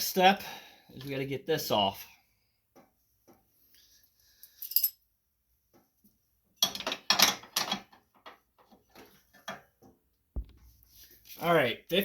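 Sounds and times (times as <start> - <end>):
hand tools and metal clinking: 4.3 - 5.1.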